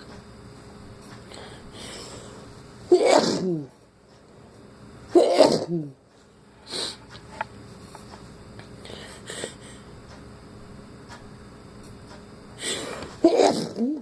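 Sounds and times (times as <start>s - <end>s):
person sneezing: 2.9s - 3.7s, 5.1s - 5.9s, 12.6s - 14.0s.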